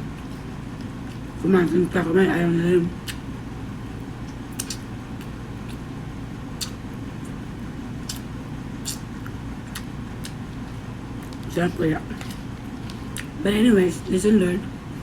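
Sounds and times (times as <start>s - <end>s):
steady low hum: 0.0s - 15.0s
mouth clicks and smacks chewing: 3.0s - 3.2s, 4.2s - 5.8s, 6.6s - 7.4s, 8.0s - 11.4s.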